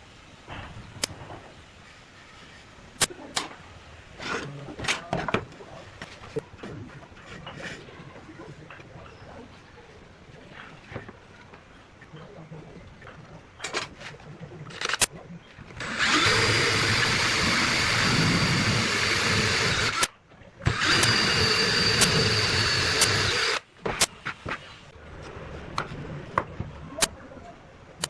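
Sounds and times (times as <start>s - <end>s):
power tool whining: 15.8s - 20.1s, 20.7s - 23.6s.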